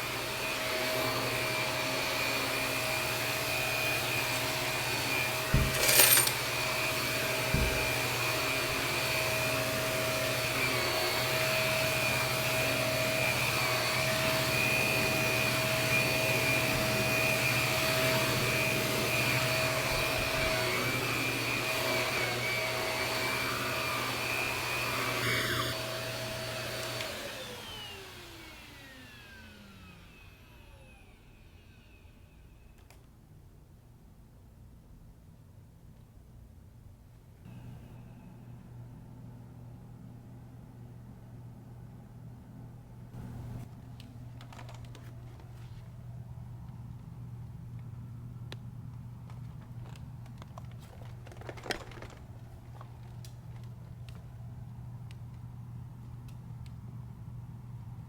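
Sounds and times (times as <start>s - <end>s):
vacuum cleaner motor running: 0.0s - 32.6s, 43.2s - 43.7s.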